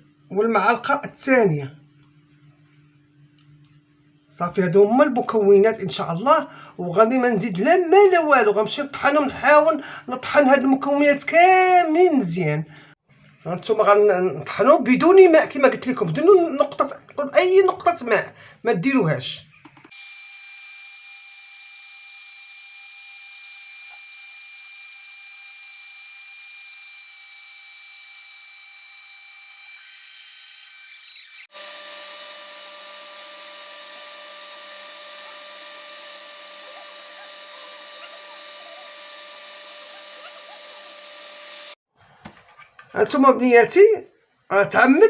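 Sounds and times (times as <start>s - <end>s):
electric kitchen grinder whining: 19.8s - 41.8s.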